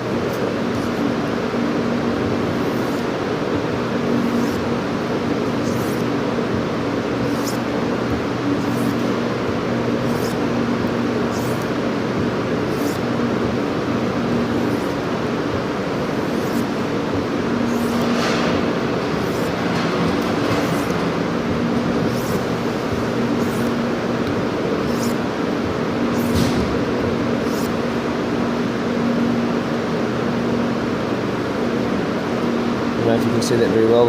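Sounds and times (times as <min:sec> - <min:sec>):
steady hum: 0:00.0 - 0:34.0
knife scraping on sharpening stone: 0:10.0 - 0:10.4, 0:11.3 - 0:11.7, 0:12.7 - 0:13.1.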